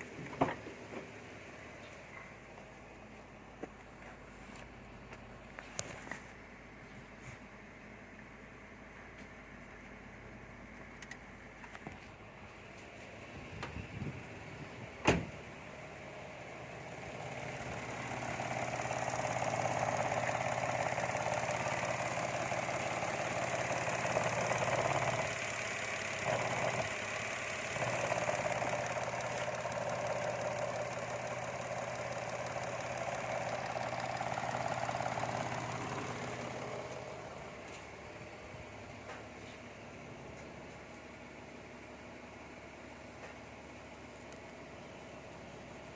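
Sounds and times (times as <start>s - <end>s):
car engine idling: 0.0s - 45.9s.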